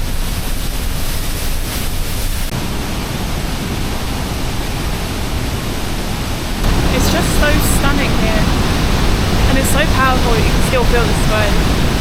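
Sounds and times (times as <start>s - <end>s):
waterfall rushing water: 2.5s - 12.0s.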